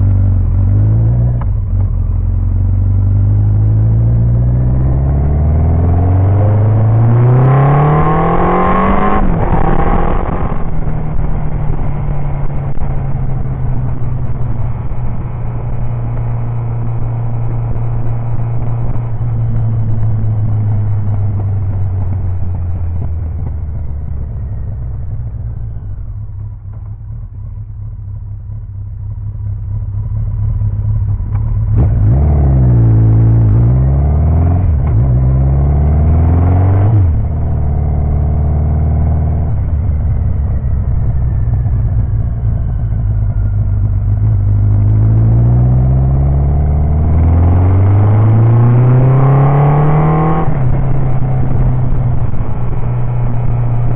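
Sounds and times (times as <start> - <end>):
motorcycle engine running: 0.0 - 36.3, 36.9 - 53.9.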